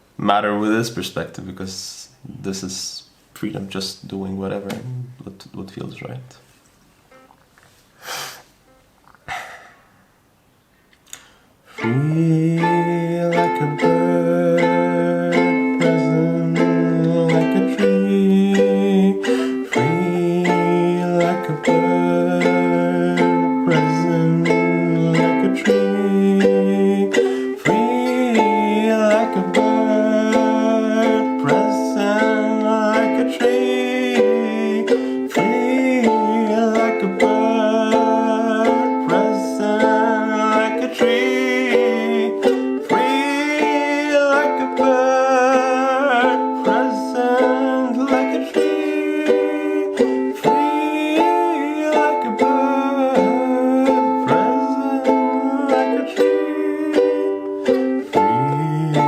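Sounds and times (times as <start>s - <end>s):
person singing: 11.7s - 59.0s
strummed string instrument: 11.8s - 59.0s.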